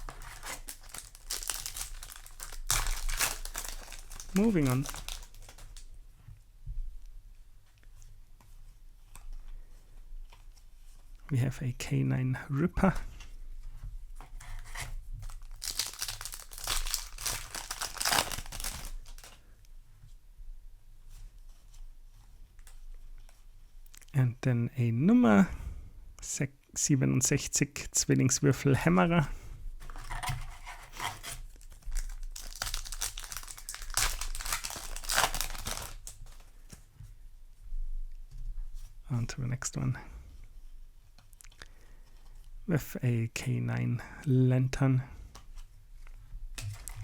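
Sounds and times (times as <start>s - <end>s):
foil wrapper crinkling and tearing: 0.0s - 5.9s, 14.7s - 19.4s, 31.2s - 36.8s, 46.6s - 47.0s.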